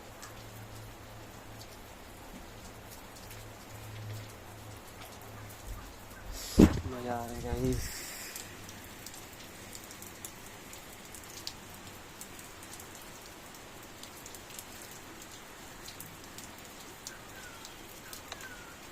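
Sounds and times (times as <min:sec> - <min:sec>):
rain hissing: 0:00.0 - 0:18.9
raindrop hits: 0:01.6 - 0:12.4.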